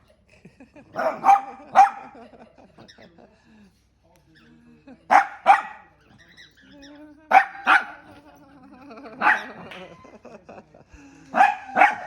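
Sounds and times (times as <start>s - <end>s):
small dog barking: 1.0s - 2.2s, 5.1s - 5.9s, 7.3s - 8.1s, 9.2s - 9.7s, 11.3s - 12.0s.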